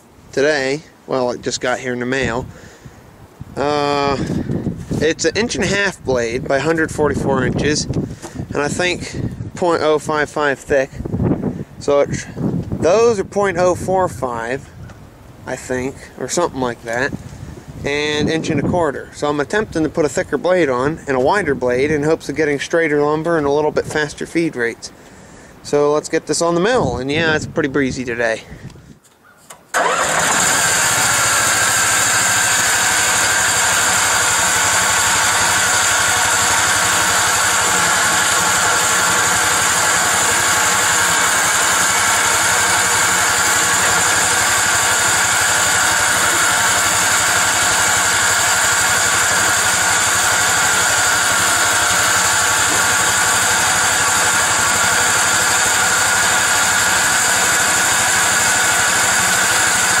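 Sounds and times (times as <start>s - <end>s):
sawmill engine running: 29.7s - 60.0s
high whine of band saw blade: 29.8s - 60.0s.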